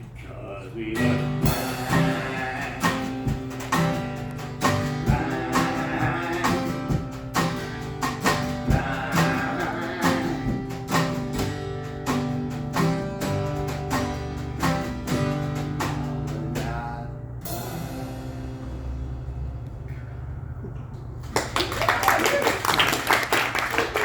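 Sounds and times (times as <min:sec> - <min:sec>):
acoustic guitar strumming: 0:00.8 - 0:20.7.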